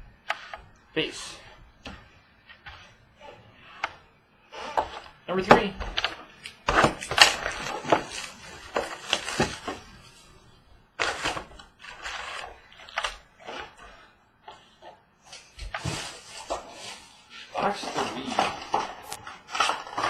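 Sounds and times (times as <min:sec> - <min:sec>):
plastic wrap crinkling: 0:05.9 - 0:10.4.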